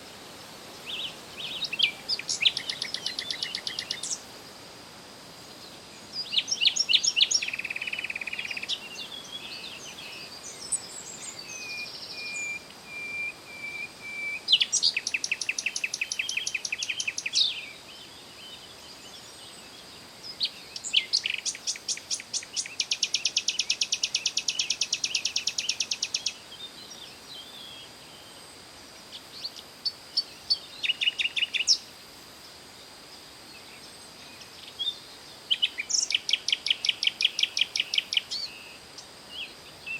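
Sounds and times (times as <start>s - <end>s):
songbird trilling: 0.9s - 4.2s, 6.2s - 17.7s, 20.4s - 26.4s, 29.5s - 31.8s, 34.8s - 38.8s.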